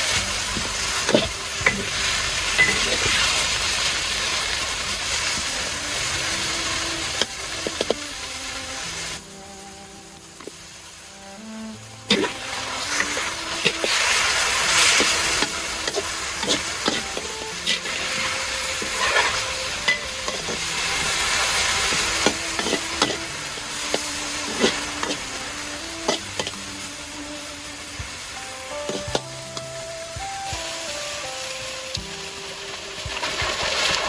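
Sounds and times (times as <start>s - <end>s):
food sizzling in a pan: 0.0s - 34.0s
utensil scraping a pan: 0.1s - 8.1s, 12.1s - 26.9s.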